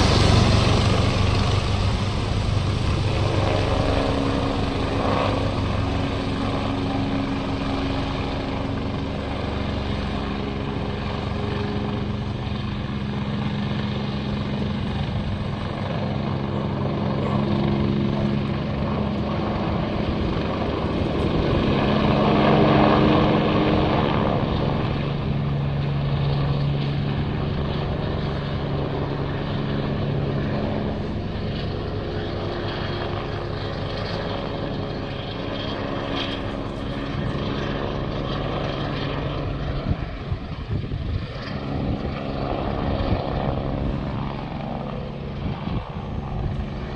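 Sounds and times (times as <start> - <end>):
helicopter engine and rotor: 0.0 - 46.9.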